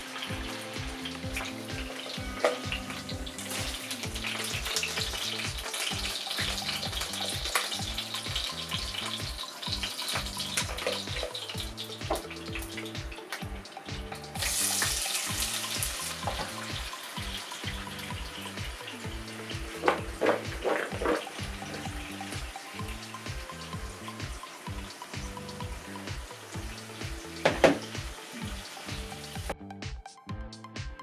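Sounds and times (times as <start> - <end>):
running water hiss: 0.0 - 29.5
music with steady beat: 0.0 - 31.0
kitchen utensils clicking: 18.9 - 21.4.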